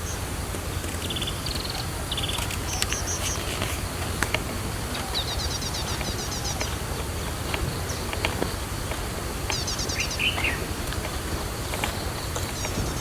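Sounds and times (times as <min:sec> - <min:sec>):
low bird call: 0:00.0 - 0:13.0
small bird trilling chirps: 0:04.6 - 0:13.0.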